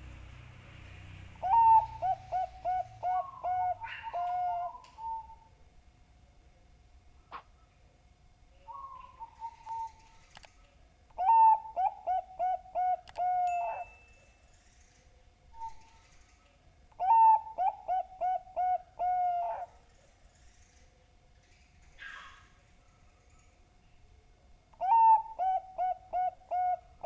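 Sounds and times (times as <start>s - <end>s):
dove cooing: 1.4s - 5.5s, 8.7s - 10.3s, 11.2s - 13.9s, 17.0s - 19.9s, 24.8s - 27.0s.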